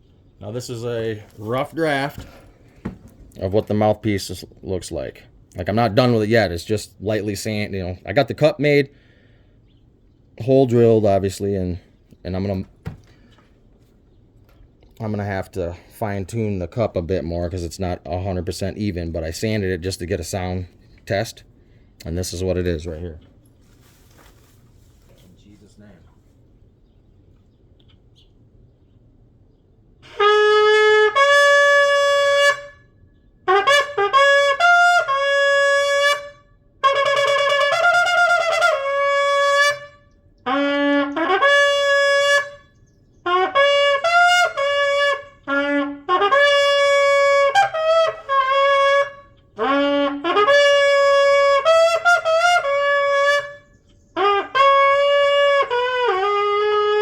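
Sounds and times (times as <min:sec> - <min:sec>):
shofar blasts: 0:00.6 - 0:04.4, 0:30.0 - 0:57.0.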